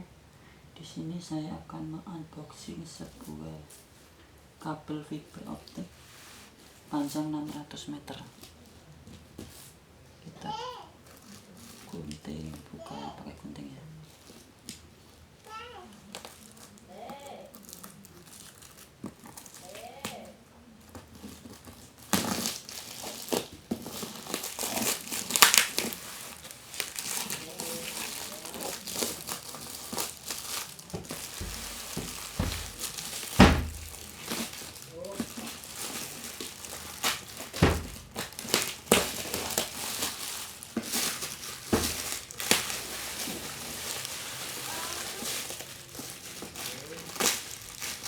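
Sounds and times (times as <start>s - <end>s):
crinkly packaging rustling: 5.4s - 9.8s, 10.5s - 48.0s
handling knocks: 30.6s - 40.2s, 40.8s - 43.9s.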